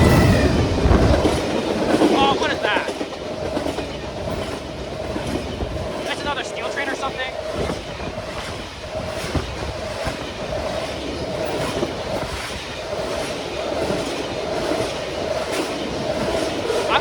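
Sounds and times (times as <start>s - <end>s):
train wheels rumbling on rails: 0.0s - 17.0s.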